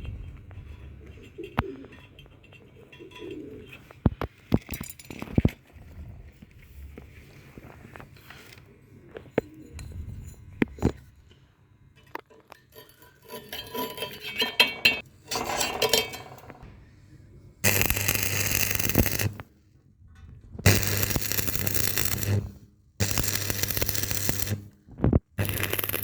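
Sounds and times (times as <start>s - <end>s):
metal pieces clinking and scraping: 12.0s - 16.6s
welding arc hissing: 17.7s - 19.4s, 20.7s - 24.7s, 25.4s - 26.0s.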